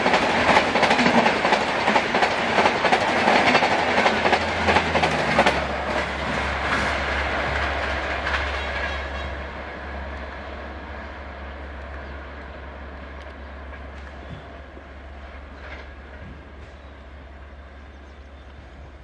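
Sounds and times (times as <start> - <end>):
train wheels clattering: 0.0 - 9.4.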